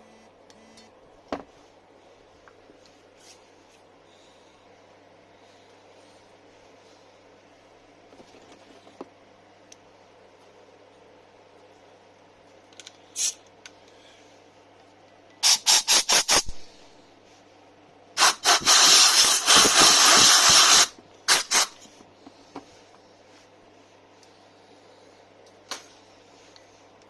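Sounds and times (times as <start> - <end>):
pressurised jet hissing: 18.2 - 21.8.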